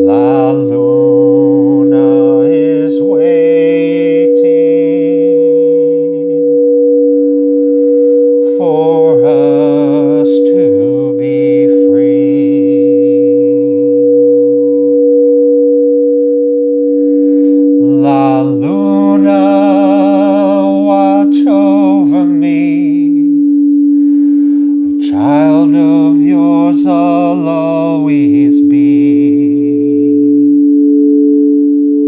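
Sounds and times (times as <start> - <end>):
person singing wordless notes: 0.0 - 6.5, 8.4 - 14.2, 17.3 - 23.4, 24.0 - 30.6
singing bowl ringing: 0.0 - 32.0.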